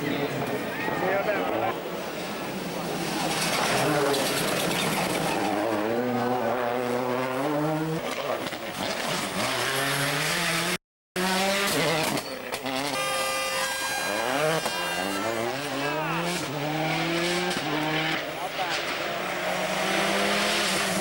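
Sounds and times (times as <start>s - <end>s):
rally car engine accelerating: 2.9s - 13.1s, 13.8s - 21.0s.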